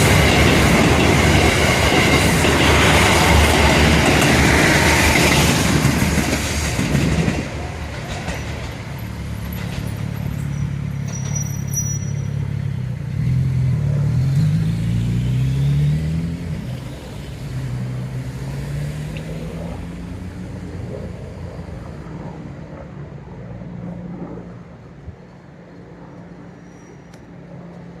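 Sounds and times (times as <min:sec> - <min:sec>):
train wheel clatter: 0:00.0 - 0:12.5
diesel railcar engine accelerating: 0:00.0 - 0:21.9.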